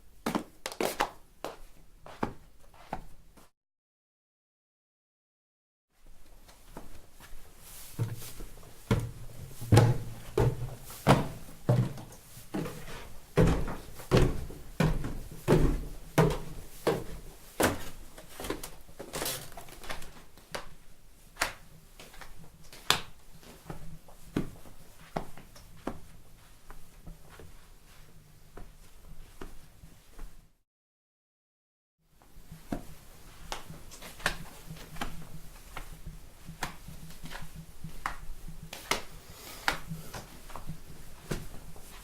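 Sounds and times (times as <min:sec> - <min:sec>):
footsteps in slippers: 0:00.3 - 0:03.5, 0:06.2 - 0:20.5.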